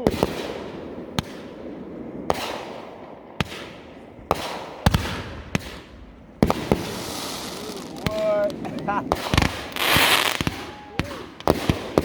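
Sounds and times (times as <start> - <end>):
fireworks bangs: 0.0 - 12.0
firework hiss: 6.5 - 11.8.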